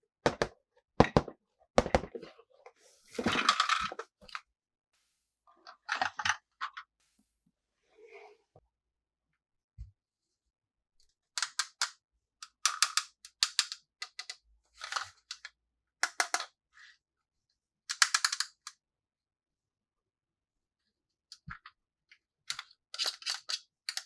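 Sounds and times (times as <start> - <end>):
plastic toy pieces clicking: 11.4 - 16.5, 17.9 - 18.8, 22.5 - 24.0.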